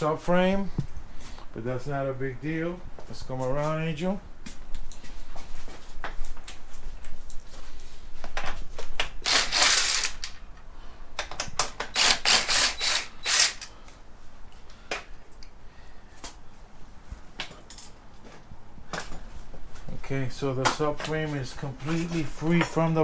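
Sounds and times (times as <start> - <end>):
hand tools clicking on metal: 9.2 - 10.6, 11.2 - 13.8.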